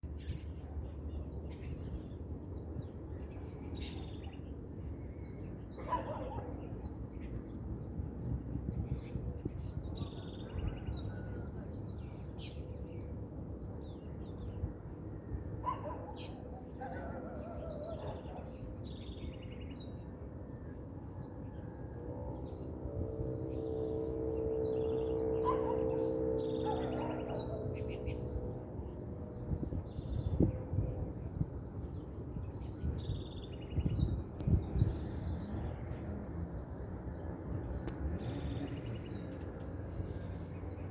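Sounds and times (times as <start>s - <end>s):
birds chirping and calling: 15.5s - 19.7s, 22.4s - 28.5s.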